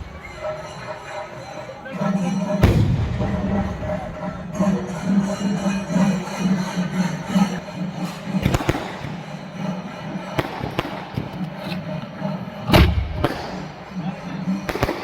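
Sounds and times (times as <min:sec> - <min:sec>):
fireworks bangs: 0:02.6 - 0:04.0.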